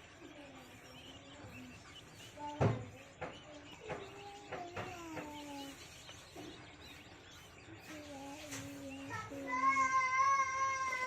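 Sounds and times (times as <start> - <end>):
chickens calling: 0.0 - 11.0
sharp knocks: 2.5 - 5.6.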